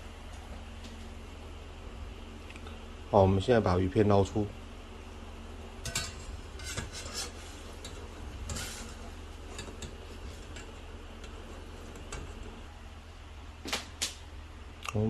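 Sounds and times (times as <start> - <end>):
steady low hum: 0.0 - 15.0
utensil scraping against a pot: 5.8 - 12.7.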